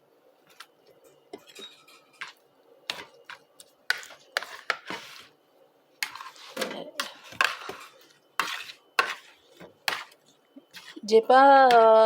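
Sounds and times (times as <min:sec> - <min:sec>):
utensil scraping a bowl: 0:06.0 - 0:12.0.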